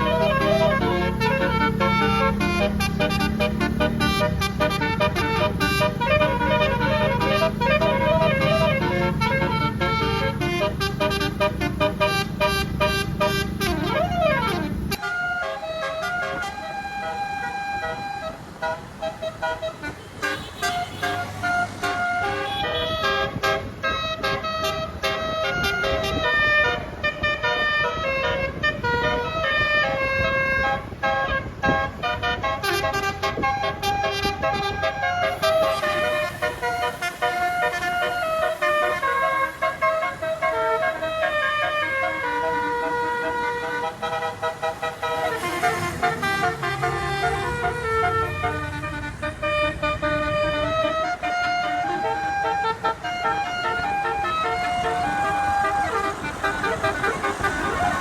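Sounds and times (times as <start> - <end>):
low engine rumble: 0.0 - 20.1
multi-tone bus horn melody: 0.0 - 58.0.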